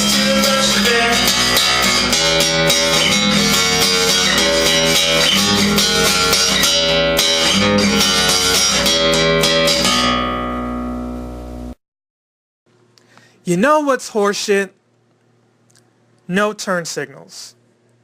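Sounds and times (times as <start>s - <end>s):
strummed guitar chords: 0.0s - 11.8s.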